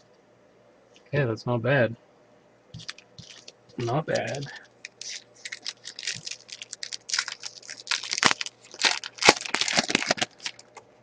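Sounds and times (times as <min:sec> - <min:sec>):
wrapper tearing and crinkling: 0:02.8 - 0:03.5, 0:04.1 - 0:10.8.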